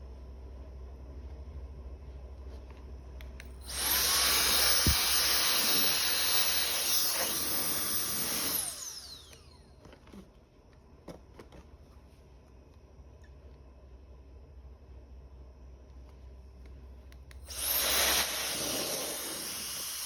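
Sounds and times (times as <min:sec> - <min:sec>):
fan winding down whine: 0:03.6 - 0:09.7.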